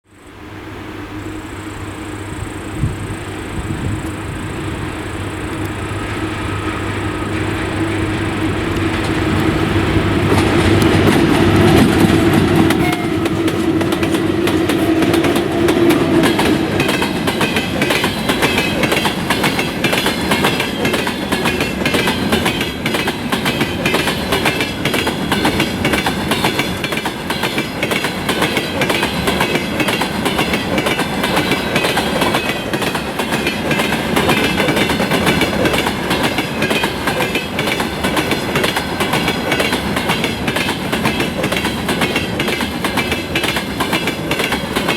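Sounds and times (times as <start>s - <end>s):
steady hum: 0.2s - 10.4s
train wheels clickety-clack: 5.5s - 44.9s.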